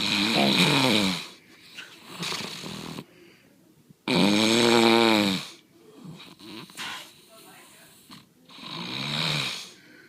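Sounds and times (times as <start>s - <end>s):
loud snoring: 0.0s - 1.4s, 2.0s - 3.0s, 4.1s - 6.8s, 8.1s - 9.8s
soft breath: 3.0s - 3.7s, 9.6s - 10.0s.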